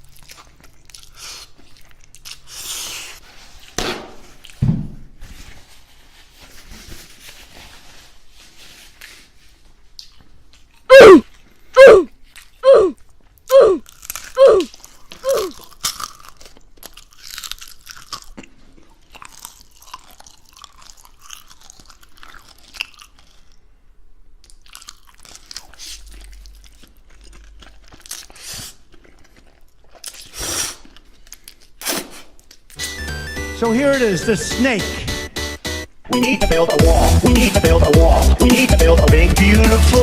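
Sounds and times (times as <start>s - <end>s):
chewing and crunching food: 0.0s - 4.6s, 7.3s - 32.8s
short loud cries: 10.9s - 11.2s, 11.8s - 13.8s, 14.4s - 15.5s.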